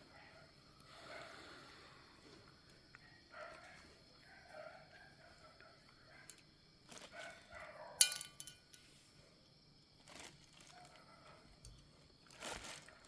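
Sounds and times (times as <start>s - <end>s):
ringing metallic clink: 8.0s - 8.7s
metal parts and tools tapping: 8.0s - 8.9s.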